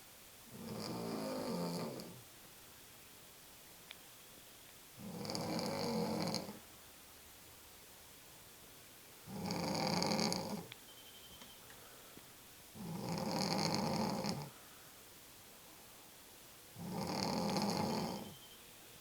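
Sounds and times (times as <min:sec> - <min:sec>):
woman snoring: 0:00.5 - 0:02.2, 0:05.0 - 0:06.6, 0:09.3 - 0:10.7, 0:12.8 - 0:14.5, 0:16.8 - 0:18.4.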